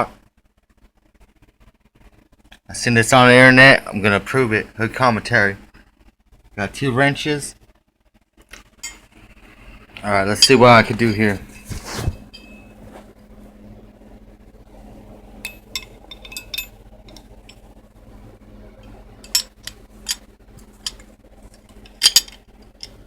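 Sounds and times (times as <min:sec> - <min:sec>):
faint steady hum: 0:00.0 - 0:23.0
metal wrenches clinking: 0:10.4 - 0:11.7, 0:15.5 - 0:16.7, 0:21.9 - 0:23.0.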